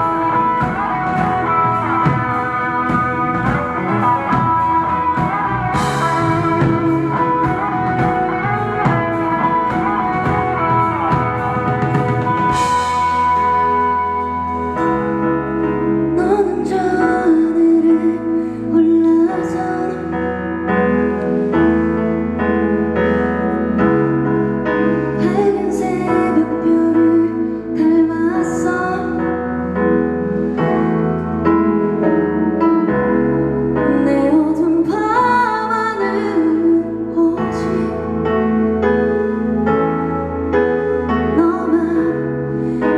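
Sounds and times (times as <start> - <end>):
light drums: 0.0 - 13.4
bass guitar: 0.0 - 42.9
keyboard: 0.0 - 42.9
woman singing: 16.1 - 20.6, 25.2 - 29.8, 33.8 - 38.6, 41.2 - 42.9.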